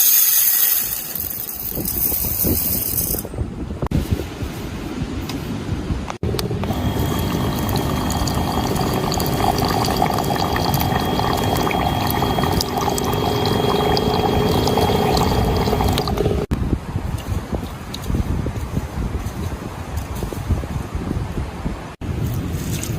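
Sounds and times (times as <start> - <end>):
liquid pouring into a container: 6.6 - 16.5.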